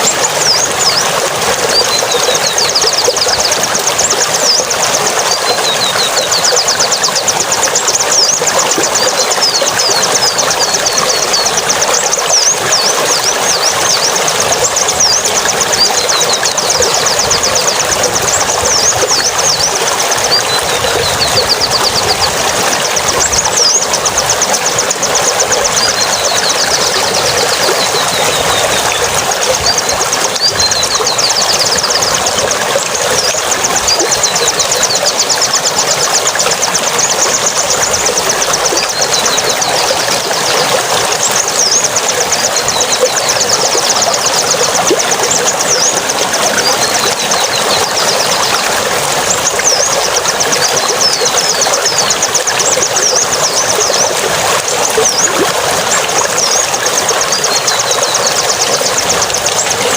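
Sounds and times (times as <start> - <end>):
high-pitched bird chattering: 0.0 - 36.0
running gurgling water: 0.0 - 59.9.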